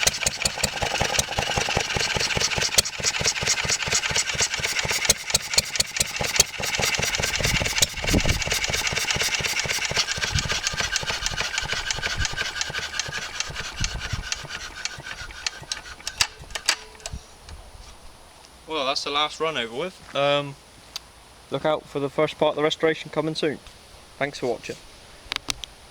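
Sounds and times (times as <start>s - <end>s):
stationary engine shutting down: 0.0s - 17.0s.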